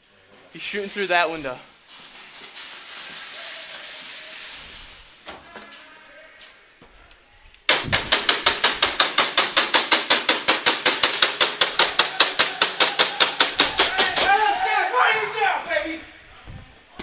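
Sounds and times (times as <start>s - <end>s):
airsoft gun firing full-auto: 7.7s - 14.0s.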